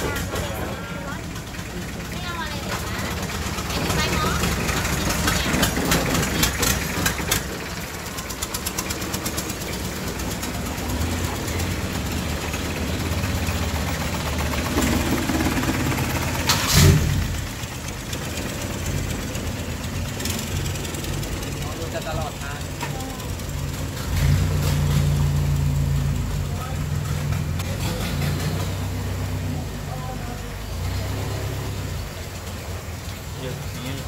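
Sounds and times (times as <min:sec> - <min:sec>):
fast rattling: 0:00.0 - 0:24.2
boat engine humming: 0:00.0 - 0:34.0.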